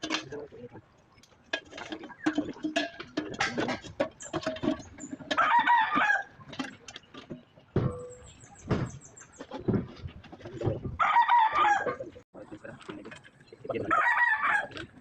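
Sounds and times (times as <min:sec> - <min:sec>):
rooster crowing: 0:05.4 - 0:06.3, 0:11.0 - 0:12.0, 0:13.9 - 0:14.7.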